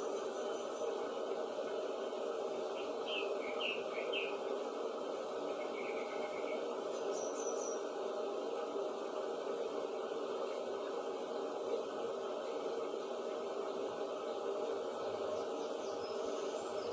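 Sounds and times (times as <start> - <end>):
steady background hiss: 0.0 - 16.9
faint bird chirps: 5.6 - 7.8, 15.3 - 16.9.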